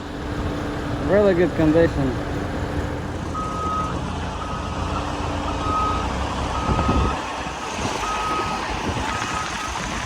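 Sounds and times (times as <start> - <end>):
engine rumble: 0.0 - 10.0
backup alarm beeping: 3.4 - 7.2.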